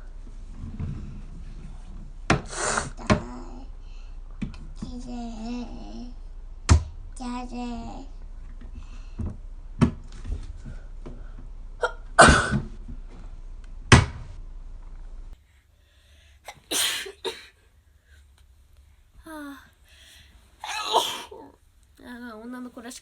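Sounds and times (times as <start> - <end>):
breaths: 3.8 - 4.3, 8.7 - 9.4, 10.6 - 11.5, 15.4 - 16.5, 19.0 - 20.5
woman sneezing: 16.5 - 17.5, 20.6 - 21.5.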